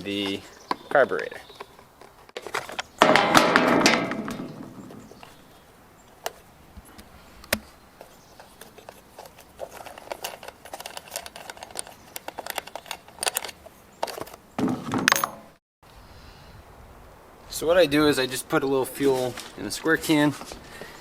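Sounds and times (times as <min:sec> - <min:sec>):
rustling clatter: 0:08.0 - 0:15.2.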